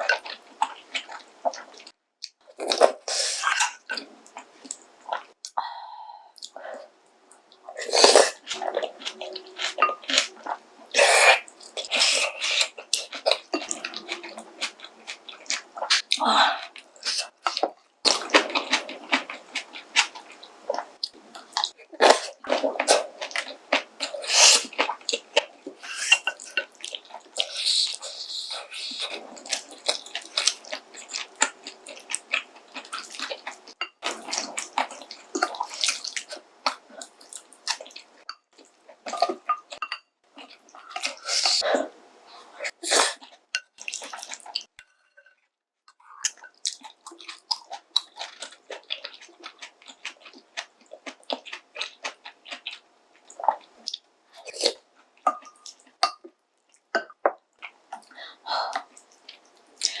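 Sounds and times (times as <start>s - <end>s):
wet slurping and chewing: 7.5s - 41.7s, 42.3s - 44.8s, 45.9s - 60.0s.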